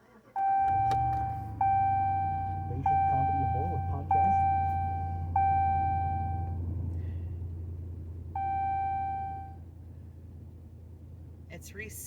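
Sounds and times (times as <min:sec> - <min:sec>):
low car hum: 0:00.0 - 0:12.0
car dashboard chime: 0:00.4 - 0:06.6, 0:08.4 - 0:09.6.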